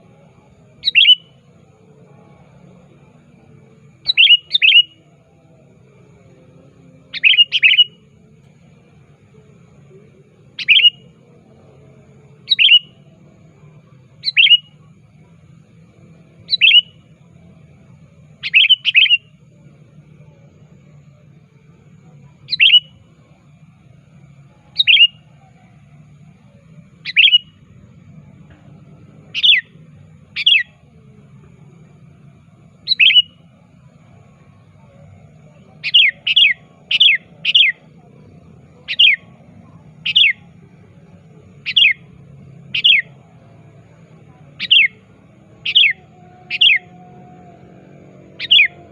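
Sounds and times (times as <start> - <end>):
faint low hum: 0.0 - 48.9
bird chirping calls: 0.8 - 1.4, 4.0 - 5.0, 7.1 - 8.0, 10.5 - 11.1, 12.3 - 13.1, 14.2 - 14.9, 16.4 - 17.0, 18.4 - 19.3, 22.3 - 23.0, 24.6 - 25.7, 26.5 - 27.6, 29.2 - 30.9, 32.8 - 33.4, 34.8 - 48.9.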